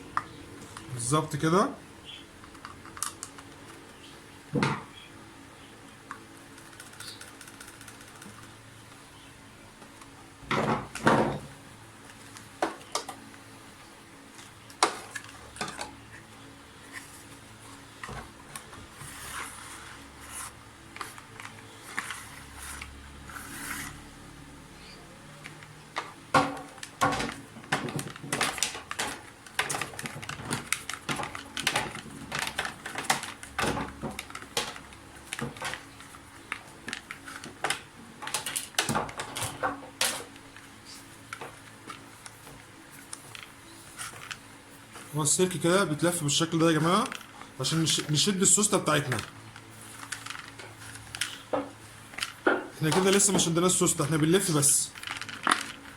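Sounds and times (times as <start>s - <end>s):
plastic parts clicking and knocking: 25.4s - 40.6s, 46.6s - 55.9s.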